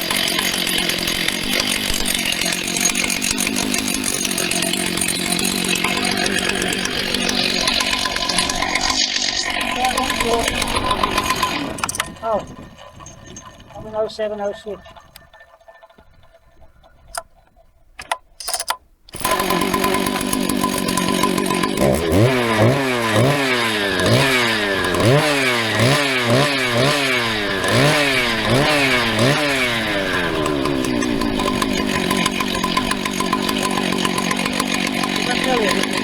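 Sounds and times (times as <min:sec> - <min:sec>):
chainsaw engine revving: 0:00.0 - 0:16.4, 0:18.0 - 0:36.0
clicks: 0:14.6 - 0:20.0.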